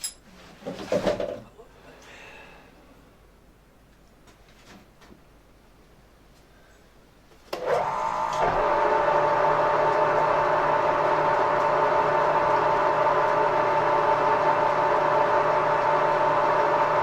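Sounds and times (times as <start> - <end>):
machine tool motor humming and whining: 7.6 - 17.0.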